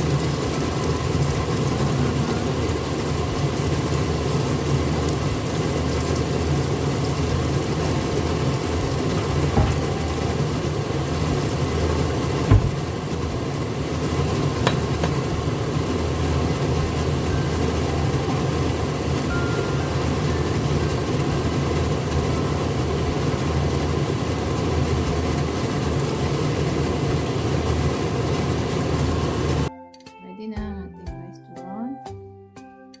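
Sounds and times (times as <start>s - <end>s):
food frying in oil: 0.0s - 29.7s
kitchen hum: 0.0s - 29.7s
low thump: 9.4s - 10.3s, 12.5s - 13.0s.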